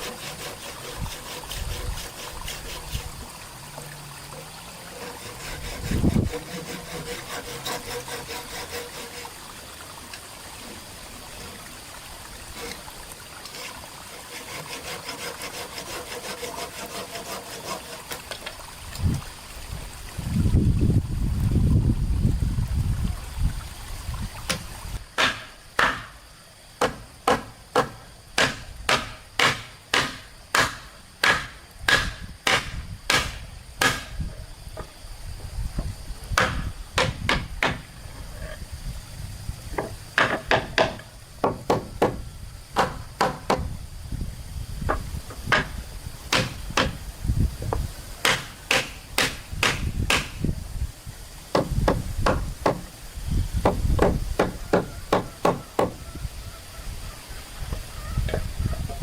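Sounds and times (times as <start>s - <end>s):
tool striking wood: 25.2s - 26.2s, 26.8s - 34.2s, 36.4s - 37.8s, 39.7s - 42.2s, 42.8s - 43.7s, 44.9s - 47.0s, 47.7s - 50.4s, 51.5s - 52.9s, 53.6s - 56.0s.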